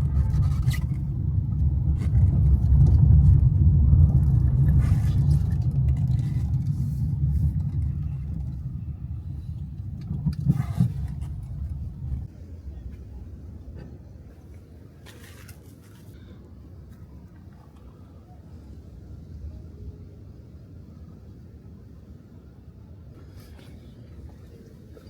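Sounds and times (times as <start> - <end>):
car engine and road noise: 0.0 - 19.6.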